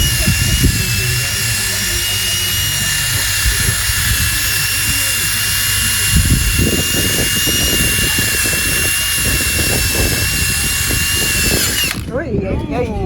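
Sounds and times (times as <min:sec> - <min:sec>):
electric sander motor whine: 0:00.0 - 0:12.1
sander abrasive hiss on metal: 0:00.0 - 0:12.1.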